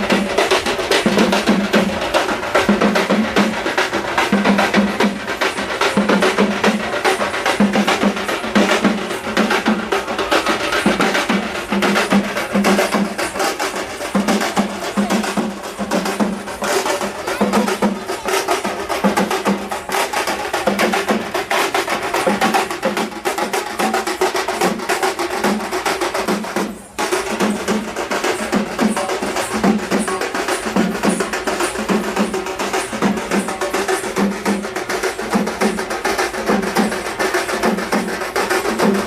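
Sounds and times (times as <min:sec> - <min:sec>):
percussion music with fast drums: 0:00.0 - 0:39.0.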